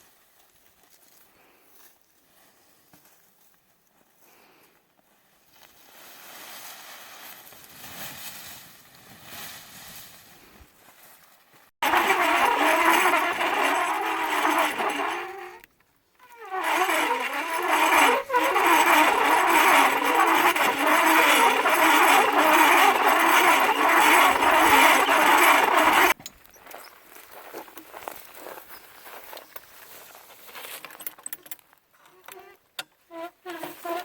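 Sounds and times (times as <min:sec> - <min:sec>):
small engine running: 0:11.8 - 0:15.6, 0:16.2 - 0:26.2.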